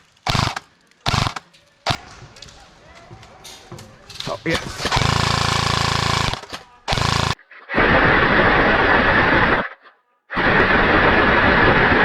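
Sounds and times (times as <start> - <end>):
harsh hissing noise bursts: 0.0 - 1.4, 4.4 - 12.0
airsoft gun full-auto burst: 0.0 - 2.1, 4.5 - 9.8, 10.4 - 12.0.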